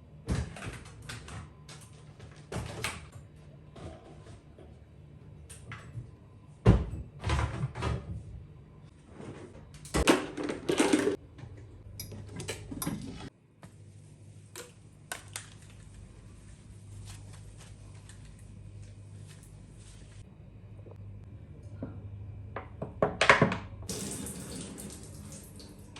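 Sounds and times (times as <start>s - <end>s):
low steady hum: 3.1s - 25.9s.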